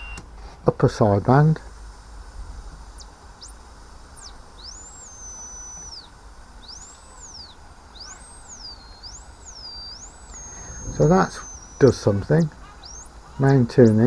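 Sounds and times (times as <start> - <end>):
radio static hiss: 0.0 - 14.0
radio whistle gliding in pitch: 4.2 - 13.1.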